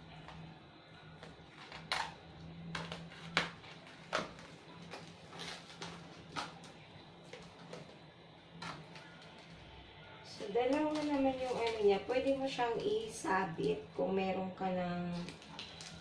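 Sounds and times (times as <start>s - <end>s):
low steady hum: 0.0s - 16.0s
bubble wrap crinkling: 1.0s - 8.0s, 10.7s - 13.1s, 15.1s - 16.0s.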